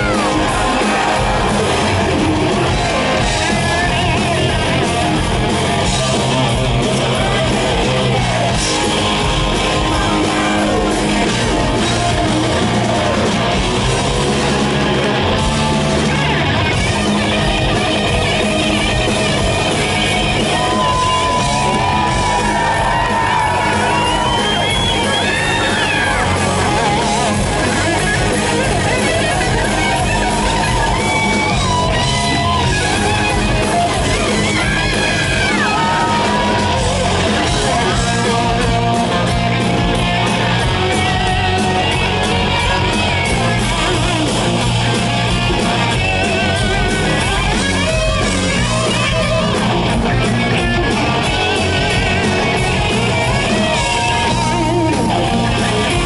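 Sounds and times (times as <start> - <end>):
bass guitar: 0.0 - 56.0
drums: 0.0 - 56.0
loud electric guitar: 0.0 - 56.0.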